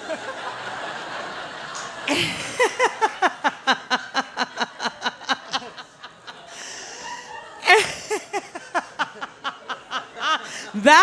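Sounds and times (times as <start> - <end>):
audience laughing: 0.0 - 11.0
person laughing heartily: 2.1 - 10.8.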